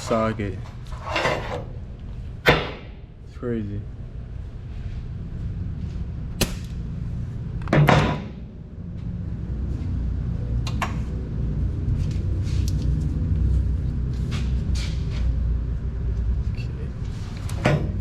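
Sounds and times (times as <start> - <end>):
low rumble: 1.7 - 17.2.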